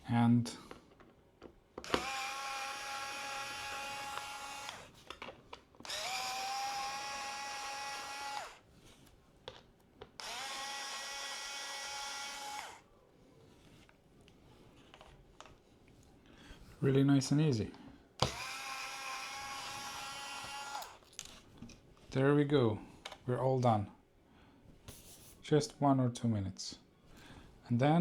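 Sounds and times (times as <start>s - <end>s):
electric screwdriver motor whining: 1.8s - 5.0s, 5.8s - 8.6s, 10.2s - 12.8s, 18.2s - 21.0s.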